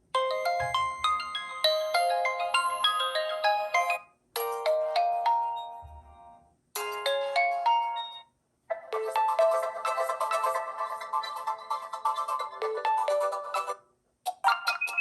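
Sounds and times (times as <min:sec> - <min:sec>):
phone ringtone melodies: 0:00.1 - 0:15.0.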